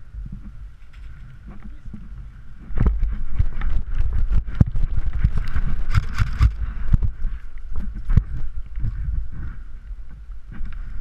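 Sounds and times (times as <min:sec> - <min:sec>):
sharp clicks and knocks: 0:02.7 - 0:07.1.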